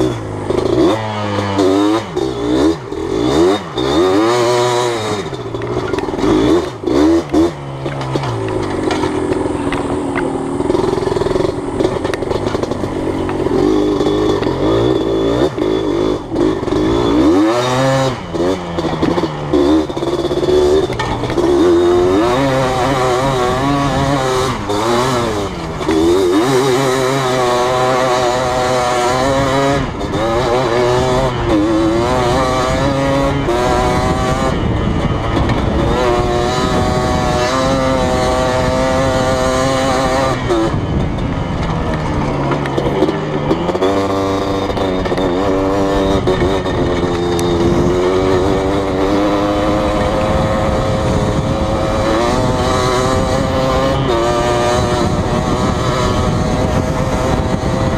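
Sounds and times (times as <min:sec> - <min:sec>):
two-stroke atv engine revving: 0:00.0 - 0:57.9.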